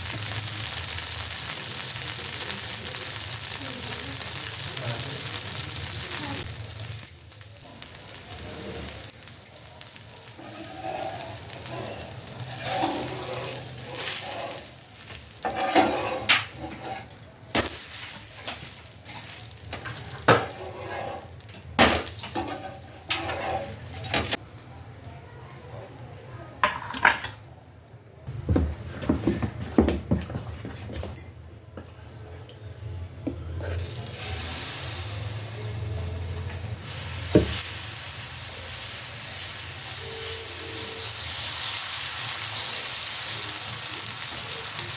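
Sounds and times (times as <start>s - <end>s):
food sizzling in a pan: 0.0s - 24.4s, 33.6s - 44.9s
metal utensil scraping cookware: 10.4s - 24.4s.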